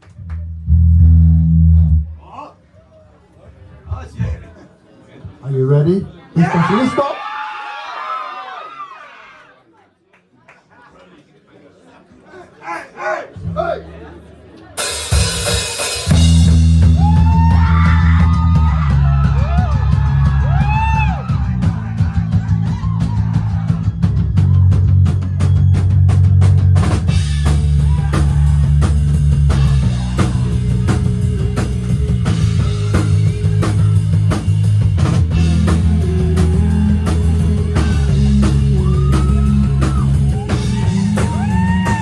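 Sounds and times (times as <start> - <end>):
bending guitar tones: 0.1 - 2.2
rock band playing: 14.8 - 42.0.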